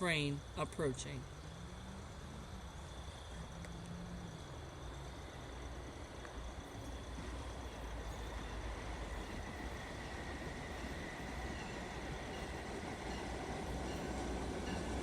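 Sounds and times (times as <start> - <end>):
train rumbling: 3.3 - 15.0.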